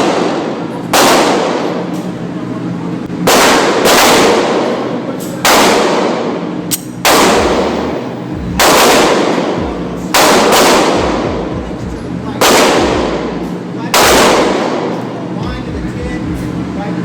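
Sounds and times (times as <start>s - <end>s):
gunshots with long echo: 0.0s - 2.0s, 3.2s - 11.8s, 12.4s - 15.1s.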